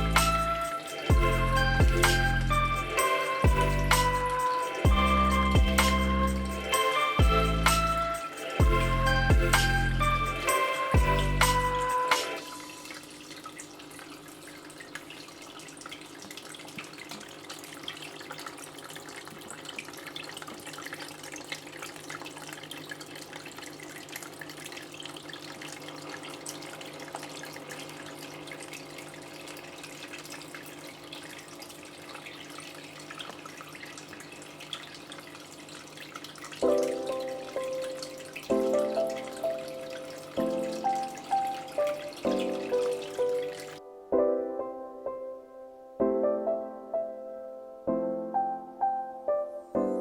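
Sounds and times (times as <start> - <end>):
water trickling and splashing: 0.0 - 43.8
small water drips: 11.4 - 43.8.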